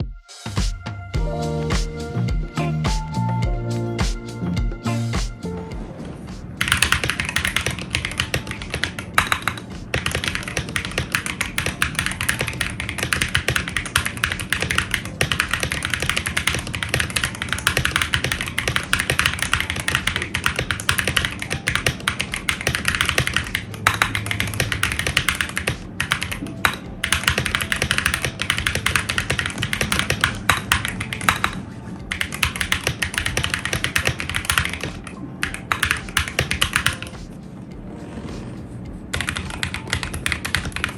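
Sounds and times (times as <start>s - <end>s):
fast mechanical keyboard typing: 6.6s - 37.2s, 39.1s - 40.9s.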